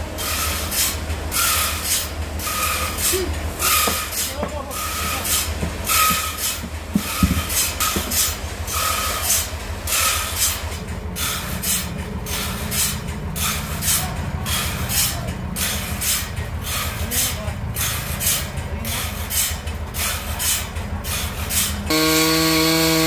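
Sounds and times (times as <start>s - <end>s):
sawmill engine drone: 0.0s - 23.0s
saw blade hissing through wood: 0.2s - 10.6s, 17.8s - 23.0s.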